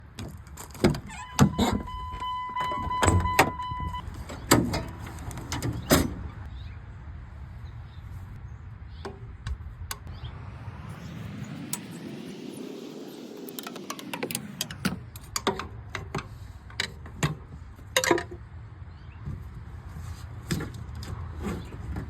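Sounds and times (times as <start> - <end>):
steady electronic beep: 1.2 - 4.0.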